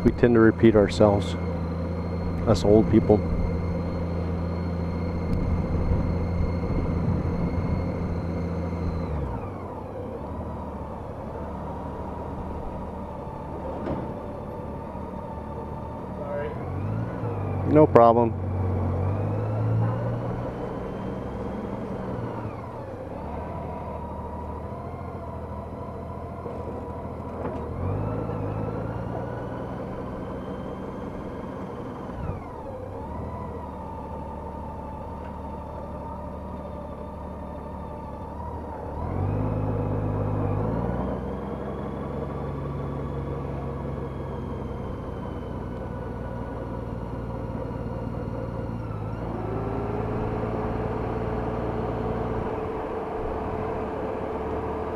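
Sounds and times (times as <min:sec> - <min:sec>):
motorcycle engine running: 0:00.0 - 0:16.6.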